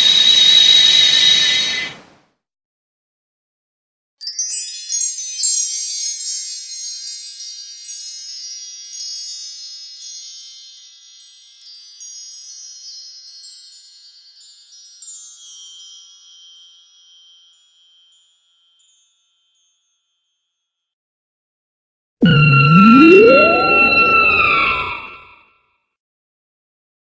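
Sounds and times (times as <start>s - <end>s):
high bell-like tinkling chimes: 4.2s - 21.0s.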